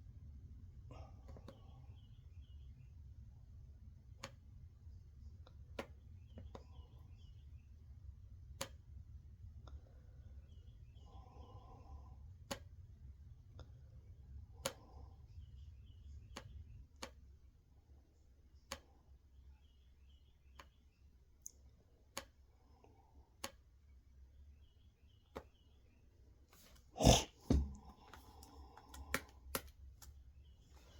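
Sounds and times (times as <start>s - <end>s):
faint sharp clicks: 18.6s - 19.0s.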